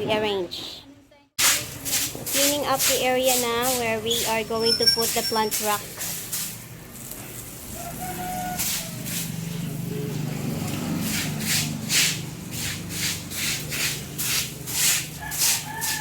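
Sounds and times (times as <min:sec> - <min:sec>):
tool scraping ground: 0:10.9 - 0:16.0.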